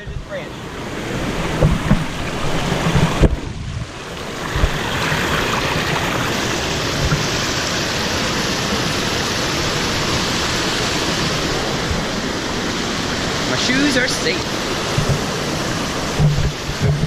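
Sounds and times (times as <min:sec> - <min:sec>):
waterfall rushing over rocks: 0:00.0 - 0:17.0
dull thumps: 0:01.5 - 0:03.9, 0:14.9 - 0:15.4.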